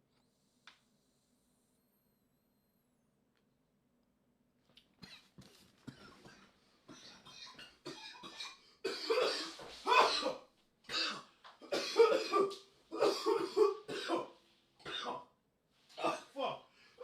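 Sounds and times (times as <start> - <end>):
man coughing hard: 5.9 - 15.3, 16.0 - 16.6.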